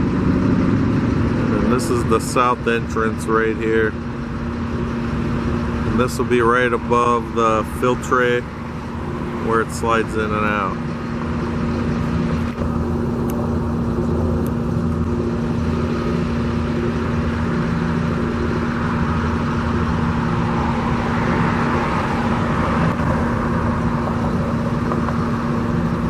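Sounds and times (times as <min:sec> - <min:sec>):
steady engine hum: 0:00.0 - 0:26.0
vehicle passing: 0:15.5 - 0:26.0.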